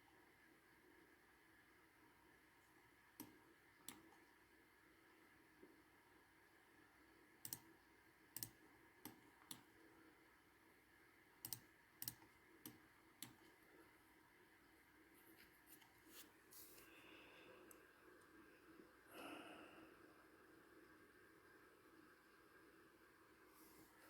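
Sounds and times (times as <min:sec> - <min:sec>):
low steady hum: 0:00.0 - 0:24.0
faint computer mouse clicks: 0:03.2 - 0:04.2, 0:07.4 - 0:07.7, 0:08.4 - 0:09.7, 0:11.4 - 0:13.6.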